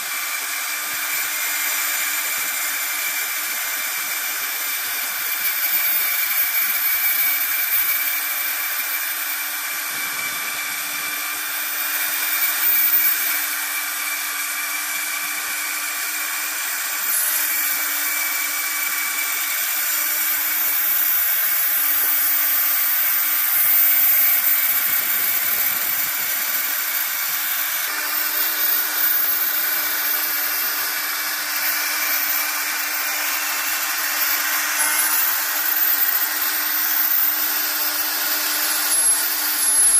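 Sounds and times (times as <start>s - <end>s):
milling spindle cutting metal: 0.0s - 39.9s.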